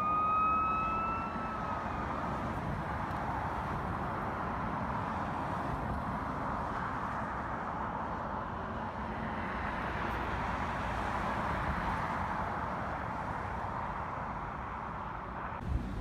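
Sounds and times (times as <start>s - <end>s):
road traffic noise: 0.0s - 16.0s.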